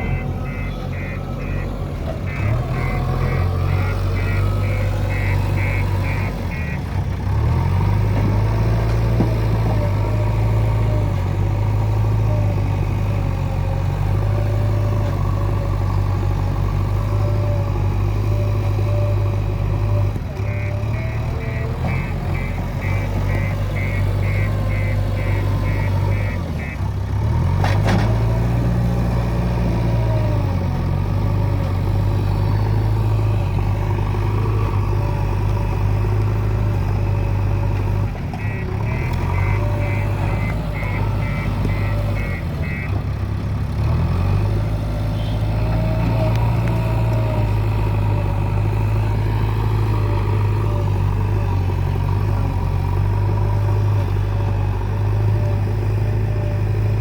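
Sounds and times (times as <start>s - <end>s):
short high beeps: 0.0s - 1.7s
backhoe diesel engine running: 0.0s - 57.0s.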